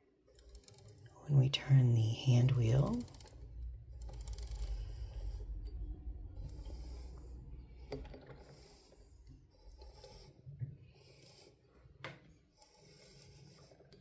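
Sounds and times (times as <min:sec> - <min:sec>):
sewing machine mechanism rubbing: 0:00.1 - 0:14.0.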